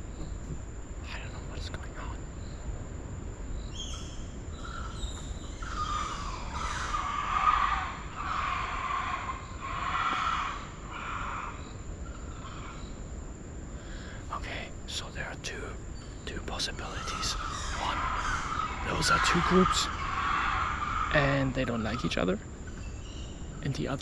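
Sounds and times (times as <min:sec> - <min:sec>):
monkeys whinnying calls: 0:03.8 - 0:13.0, 0:17.0 - 0:23.1.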